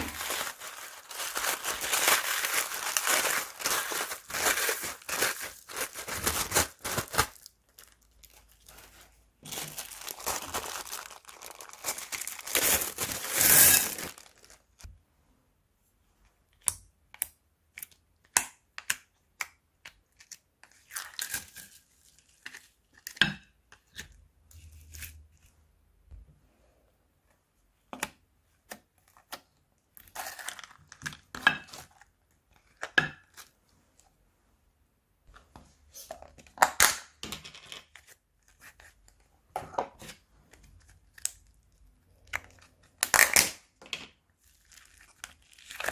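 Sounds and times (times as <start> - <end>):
plastic bags crinkling and tearing: 0.0 - 14.9, 30.1 - 31.2, 44.4 - 45.9.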